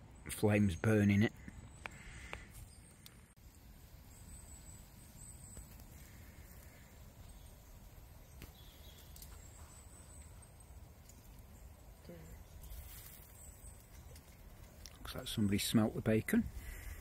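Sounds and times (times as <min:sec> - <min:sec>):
faint ticks: 0:08.3 - 0:09.5.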